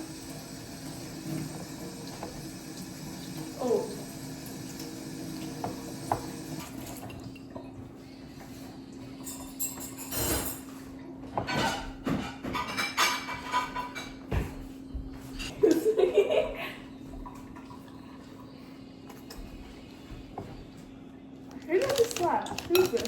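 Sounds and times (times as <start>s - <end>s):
dishes and utensils clattering: 5.6s - 18.4s, 21.5s - 23.0s.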